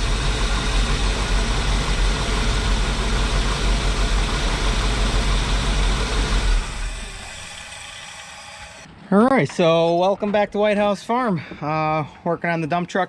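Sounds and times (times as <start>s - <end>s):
truck engine idling: 0.0s - 8.9s.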